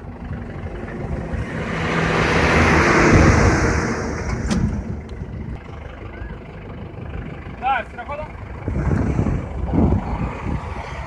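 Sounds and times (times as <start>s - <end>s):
tractor engine rumble: 0.0s - 11.0s
rushing noise: 0.6s - 5.6s.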